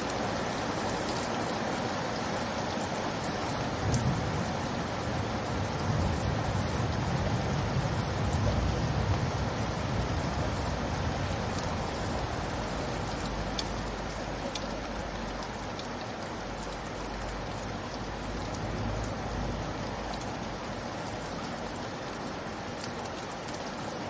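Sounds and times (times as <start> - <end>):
steady rain falling: 0.0 - 24.0
low rumble: 18.1 - 20.8.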